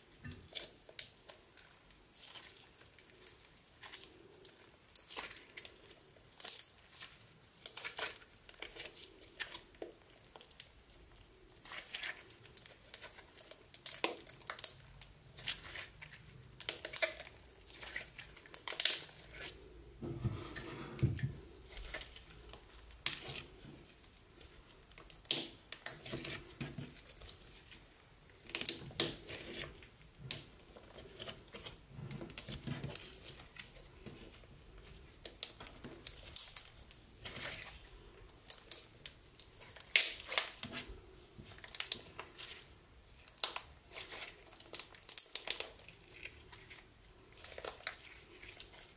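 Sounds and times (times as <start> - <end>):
deep slime squelch: 0.0 - 48.9
sticky slime popping and clicking: 18.5 - 19.1, 39.4 - 40.6, 44.7 - 45.8.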